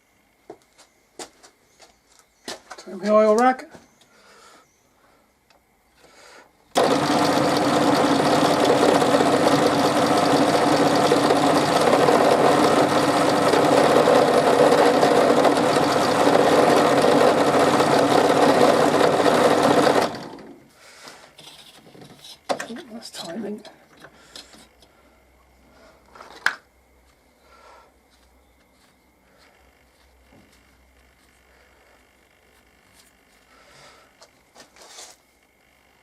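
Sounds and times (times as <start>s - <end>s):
drill motor running: 6.7s - 20.6s.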